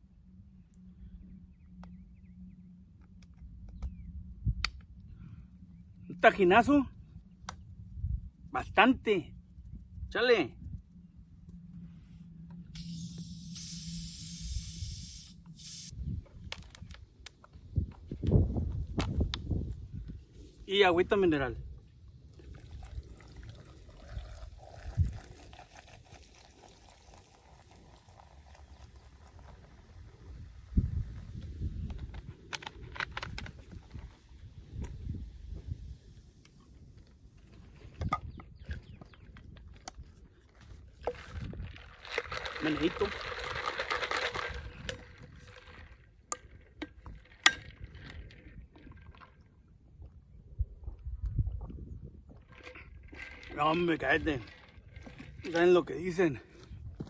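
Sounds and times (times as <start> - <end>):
faint liquid sound: 21.6 - 30.5.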